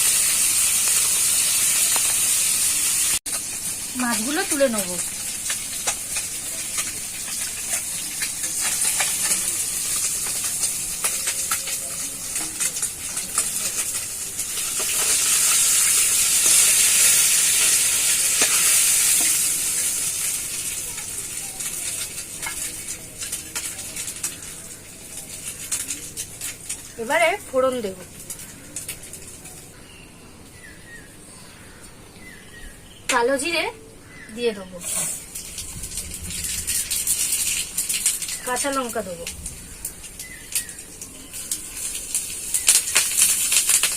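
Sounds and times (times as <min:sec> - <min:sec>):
fish sizzling in hot oil: 0:00.0 - 0:29.8, 0:34.4 - 0:43.9
spatula scraping a pan: 0:34.8 - 0:35.3.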